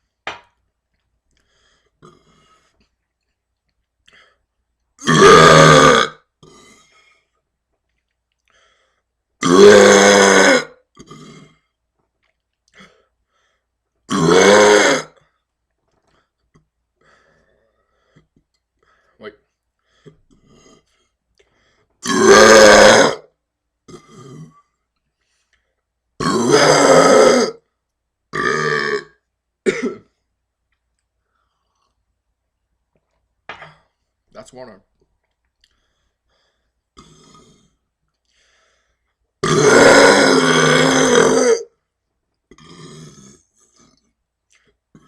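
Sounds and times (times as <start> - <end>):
loud burps: 2.0 - 2.5, 5.0 - 6.9, 9.4 - 11.8, 14.1 - 15.3, 22.0 - 24.8, 26.2 - 27.7, 28.3 - 30.2, 36.9 - 37.8, 39.4 - 41.8, 42.5 - 44.1.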